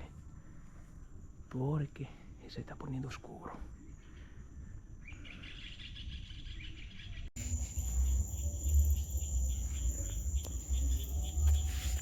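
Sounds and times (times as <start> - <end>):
crickets and insects chirping: 7.4 - 12.0
low rumble on microphone: 7.4 - 12.0.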